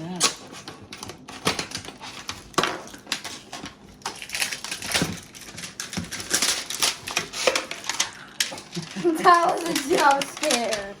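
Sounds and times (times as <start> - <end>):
plastic packaging crinkling: 0.0 - 11.0
toy clicking and knocking: 8.4 - 11.0.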